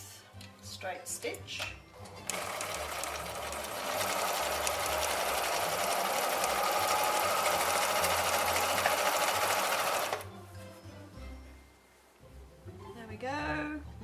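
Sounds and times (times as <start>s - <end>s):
electric sewing machine running: 2.2s - 10.2s.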